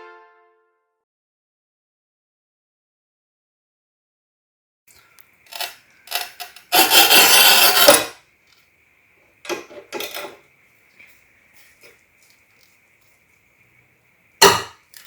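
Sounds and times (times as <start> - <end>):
cutting wheel scraping tile: 5.5 - 8.2.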